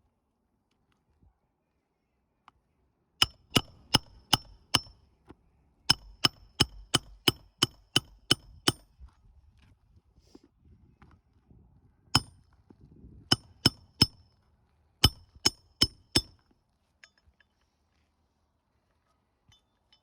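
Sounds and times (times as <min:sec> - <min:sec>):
hammer striking metal: 0:03.2 - 0:05.0, 0:05.9 - 0:08.9, 0:13.3 - 0:14.2, 0:15.0 - 0:16.3.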